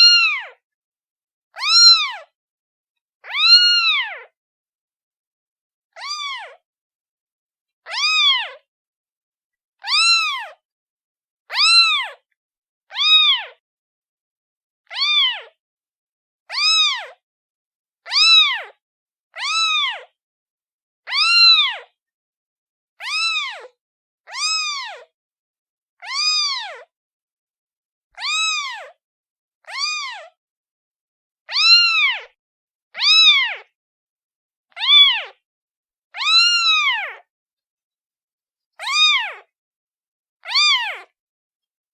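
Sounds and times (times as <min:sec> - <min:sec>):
kitten meowing: 0:00.0 - 0:00.6, 0:01.5 - 0:02.3, 0:03.2 - 0:04.3, 0:06.0 - 0:06.6, 0:07.9 - 0:08.6, 0:09.8 - 0:10.6, 0:11.5 - 0:12.2, 0:12.9 - 0:13.6, 0:14.9 - 0:15.6, 0:16.5 - 0:17.2, 0:18.1 - 0:18.8, 0:19.4 - 0:20.1, 0:21.1 - 0:21.9, 0:23.0 - 0:25.1, 0:26.0 - 0:26.9, 0:28.2 - 0:29.0, 0:29.6 - 0:30.4, 0:31.5 - 0:32.4, 0:33.0 - 0:33.7, 0:34.7 - 0:35.4, 0:36.2 - 0:37.3, 0:38.8 - 0:39.5, 0:40.4 - 0:41.1.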